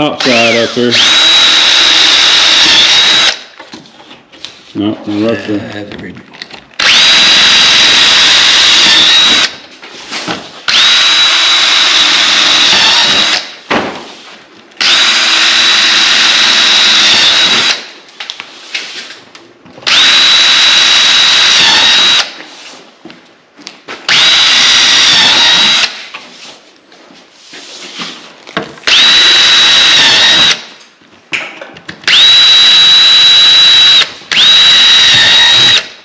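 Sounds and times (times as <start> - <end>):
power drill whining: 0.2 - 3.6, 6.8 - 9.6, 10.7 - 13.6, 14.8 - 17.9, 19.8 - 22.4, 24.1 - 26.0, 28.8 - 30.7, 32.0 - 36.0.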